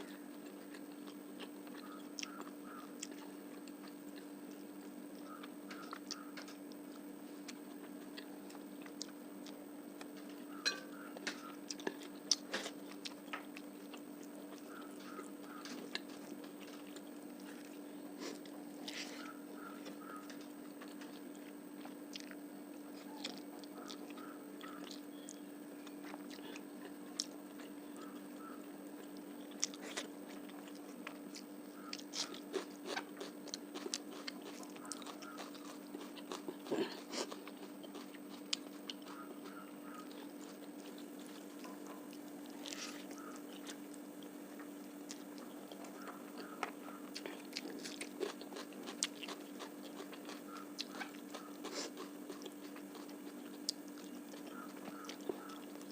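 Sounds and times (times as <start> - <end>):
steady low hum: 0.0 - 55.9
chewing with wet mouth clicks: 0.4 - 4.6, 11.2 - 17.7, 19.6 - 22.4, 23.1 - 27.7, 29.0 - 55.9
crunchy bites: 29.0 - 55.9.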